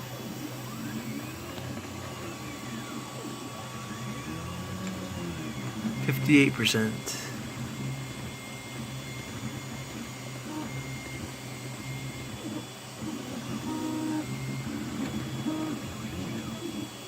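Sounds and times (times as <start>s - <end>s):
stepper motors whining: 0.1s - 17.0s
steady low hum: 0.2s - 12.4s.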